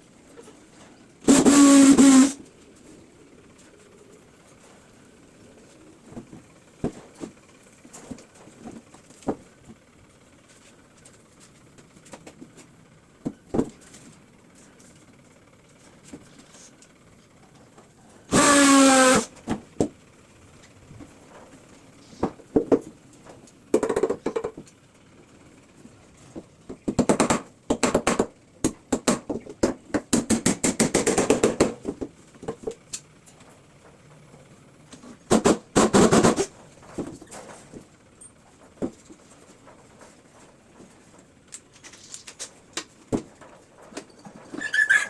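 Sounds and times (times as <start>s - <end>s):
small power tool burst: 1.2s - 2.4s, 18.3s - 19.3s
rapid sharp knocking: 28.9s - 31.8s.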